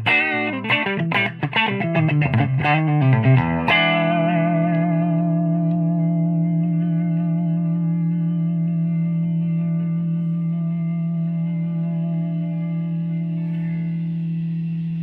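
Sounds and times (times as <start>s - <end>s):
electric guitar notes and chord: 0.0s - 15.0s.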